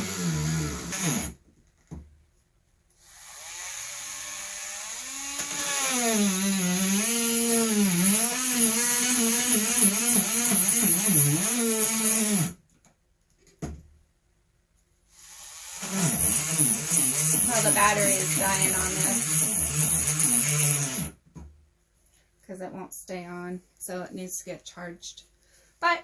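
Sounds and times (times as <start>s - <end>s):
rotary tool grinding stone: 15.6s - 21.2s.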